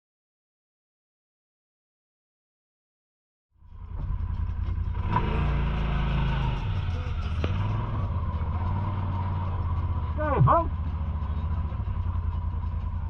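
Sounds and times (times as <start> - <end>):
utility vehicle engine revving: 3.7 - 13.0.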